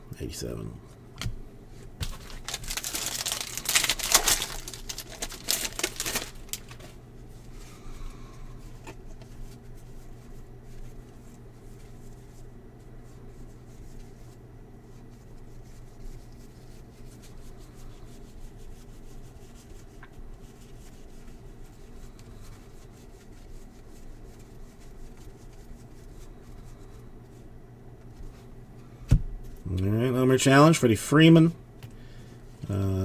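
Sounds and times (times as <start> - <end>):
steady low hum: 0.0 - 14.7, 25.8 - 33.0
cards rustling and ticking: 1.2 - 7.0.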